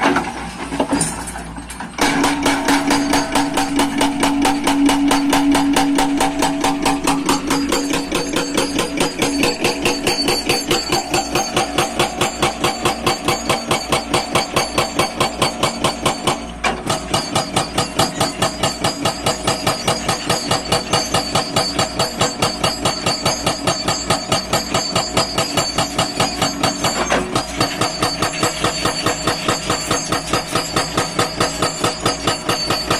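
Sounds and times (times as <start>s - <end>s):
excavator engine running: 1.9s - 21.6s
hydraulic breaker hammering: 2.0s - 32.9s.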